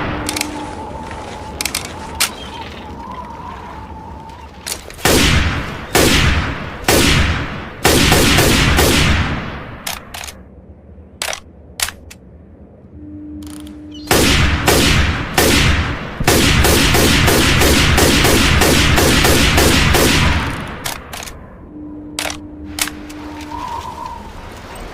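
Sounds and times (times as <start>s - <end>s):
rifle gunshots: 5.0s - 9.7s, 14.1s - 20.9s.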